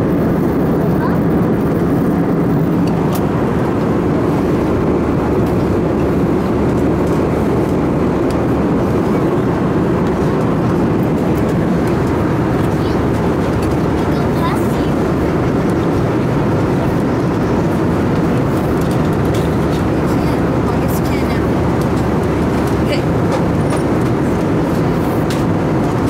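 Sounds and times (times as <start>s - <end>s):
airplane cabin engine drone: 0.0s - 26.0s.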